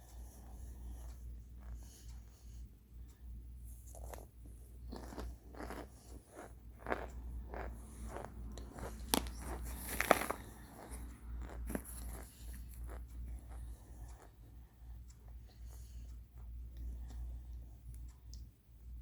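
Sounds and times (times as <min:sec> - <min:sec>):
person crunching food: 0:04.9 - 0:13.0.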